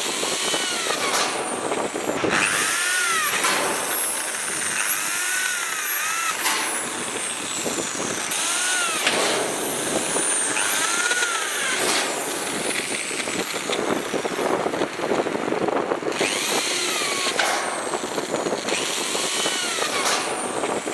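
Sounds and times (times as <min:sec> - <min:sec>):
drill bit squealing: 0:00.0 - 0:14.0, 0:16.1 - 0:20.9
power drill grinding into steel: 0:00.0 - 0:20.9.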